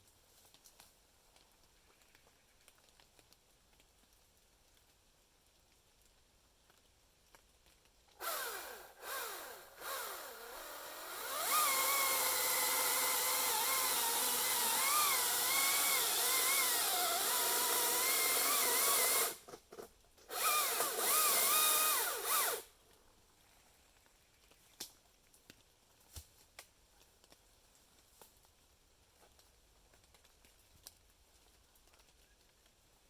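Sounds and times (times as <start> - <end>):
chainsaw cutting wood: 8.2 - 22.7.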